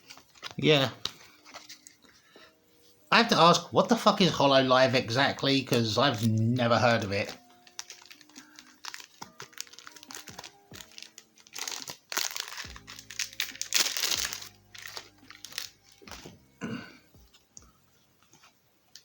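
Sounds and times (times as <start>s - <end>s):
plastic wrapper crinkling and tearing: 0.0s - 2.1s, 4.8s - 16.5s
background music: 0.0s - 19.0s.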